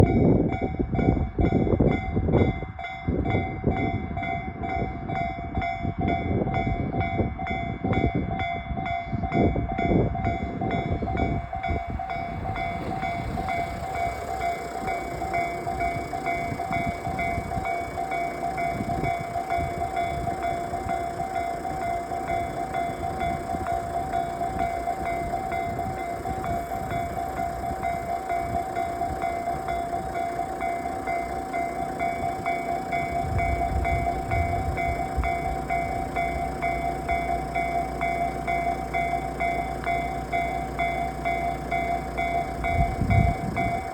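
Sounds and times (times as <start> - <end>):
train rumble and wheel clatter: 0.0 - 43.9
level crossing electronic bell: 10.3 - 43.9.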